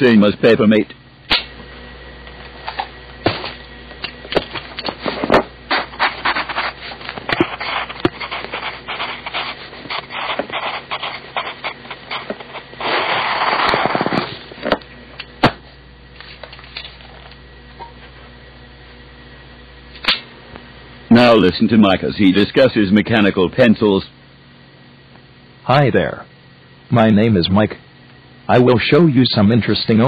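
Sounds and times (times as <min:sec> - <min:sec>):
pencil scraping: 0:05.7 - 0:14.4.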